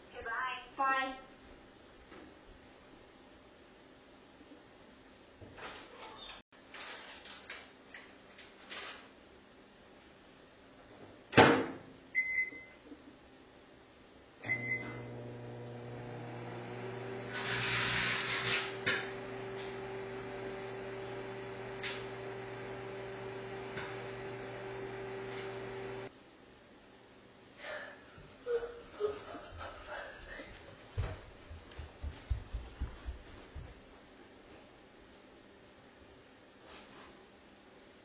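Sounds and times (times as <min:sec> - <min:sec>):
microwave oven humming: 0:14.4 - 0:26.1.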